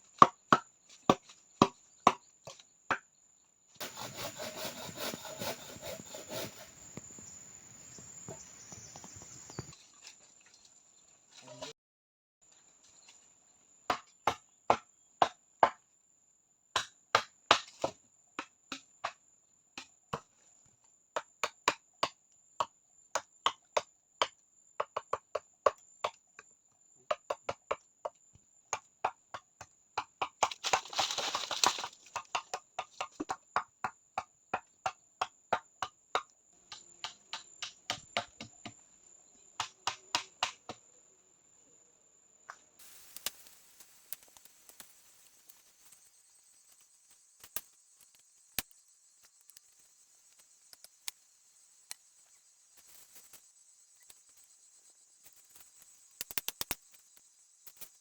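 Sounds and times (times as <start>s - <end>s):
scraping rustle: 3.8s - 11.6s.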